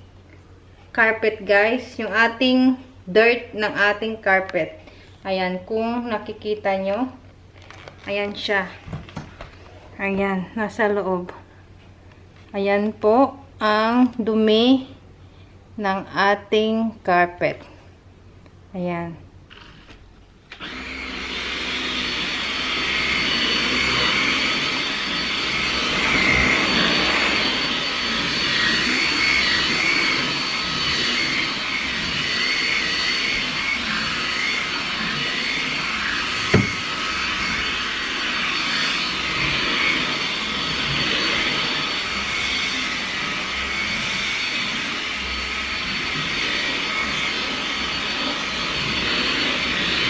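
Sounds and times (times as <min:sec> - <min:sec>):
vacuum cleaner motor whine: 0:20.5 - 0:50.0.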